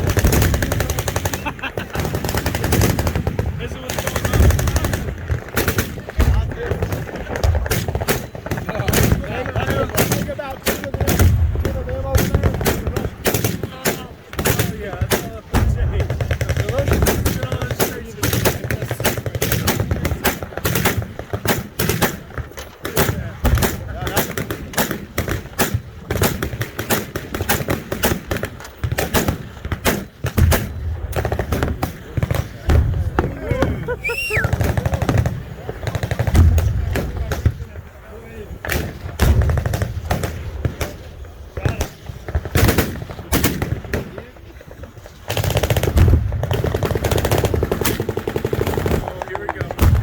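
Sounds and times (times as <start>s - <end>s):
machine-gun fire: 0.0s - 33.3s, 34.4s - 37.6s, 38.6s - 44.2s, 45.3s - 50.0s
heavy low boom: 15.5s - 17.3s.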